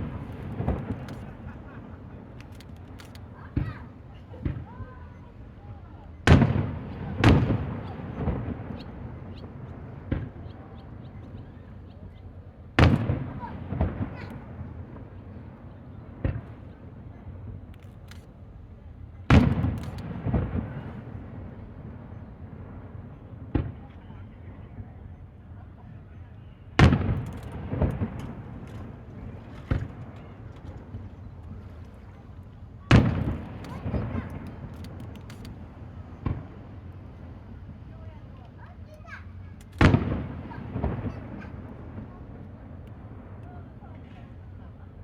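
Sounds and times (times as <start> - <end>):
fireworks rumble: 0.0 - 45.0
firework bang: 26.8 - 32.2, 32.8 - 37.8, 39.7 - 43.3.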